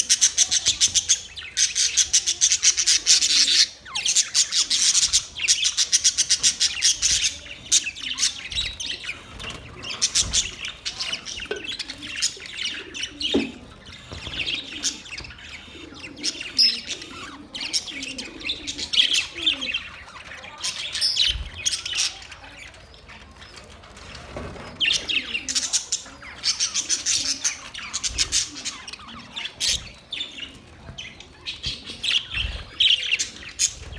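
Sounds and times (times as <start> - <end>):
budgerigars chirping: 0.0 - 22.2.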